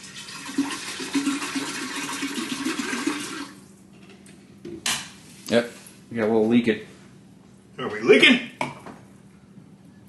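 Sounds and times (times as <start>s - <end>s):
juice pouring gurgling: 0.0s - 3.6s.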